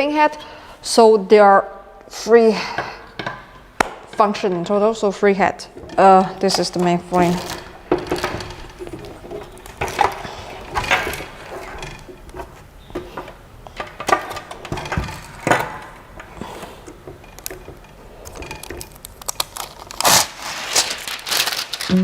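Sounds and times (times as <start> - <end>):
machine parts knocking and clunking: 5.8 - 19.0
packaging rustling: 17.4 - 22.0.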